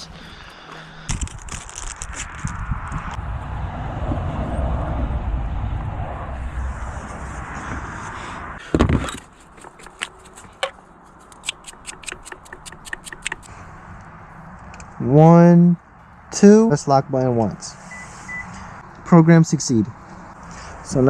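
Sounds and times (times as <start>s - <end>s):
low car rumble: 0.0s - 9.2s.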